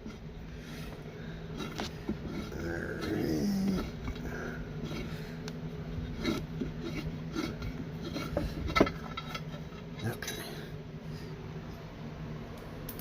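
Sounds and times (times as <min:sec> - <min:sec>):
metal tools clinking and scraping: 0:07.4 - 0:09.8.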